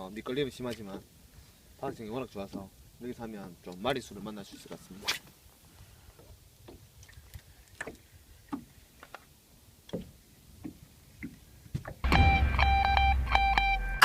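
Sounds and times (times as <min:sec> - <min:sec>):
guitar music: 0:12.0 - 0:14.0.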